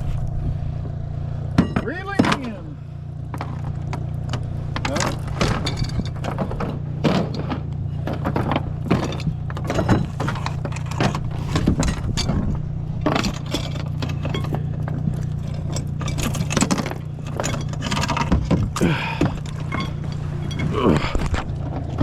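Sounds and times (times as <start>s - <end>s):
loose gear rattling: 0.0s - 22.0s
vehicle engine running: 0.0s - 22.0s.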